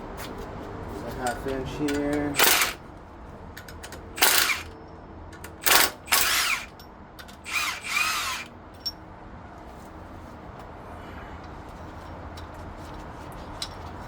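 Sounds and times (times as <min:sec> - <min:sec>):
cordless power tool spinning bolts: 0:02.3 - 0:02.8, 0:04.2 - 0:04.8, 0:05.5 - 0:06.8, 0:07.4 - 0:08.5.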